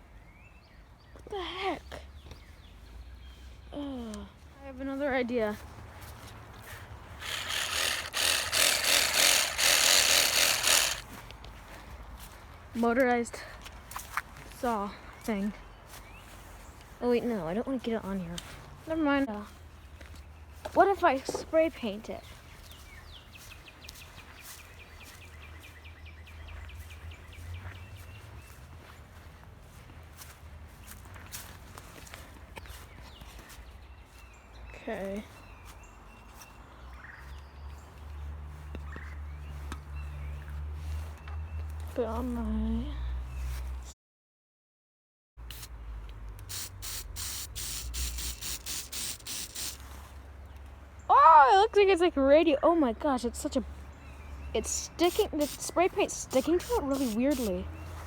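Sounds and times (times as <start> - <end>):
spray can hissing: 7.2 - 11.0, 45.5 - 45.7, 46.4 - 49.8, 55.0 - 57.6.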